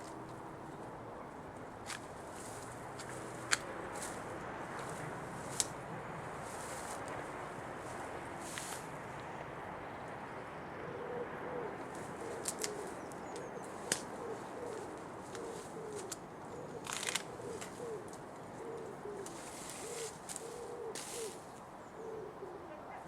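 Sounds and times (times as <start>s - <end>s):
short rustle: 6.4s - 7.2s, 19.2s - 21.6s
pigeon cooing: 10.8s - 23.0s
sharp clicks: 16.8s - 17.8s.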